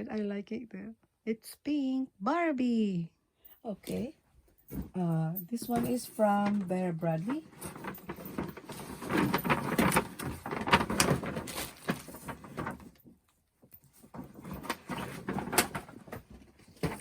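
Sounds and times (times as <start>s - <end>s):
tote bag rustling: 7.1s - 13.0s.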